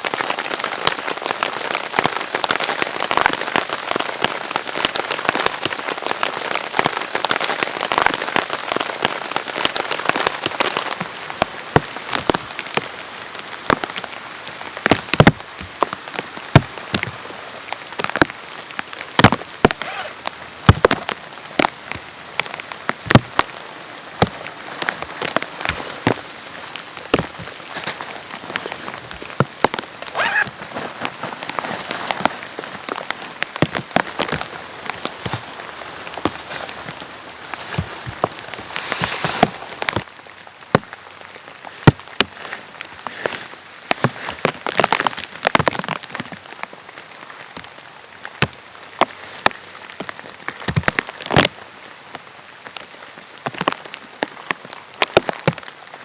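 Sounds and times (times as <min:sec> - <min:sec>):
heavy rain hissing: 0:00.0 - 0:40.6
large raindrops tapping: 0:00.0 - 0:56.0.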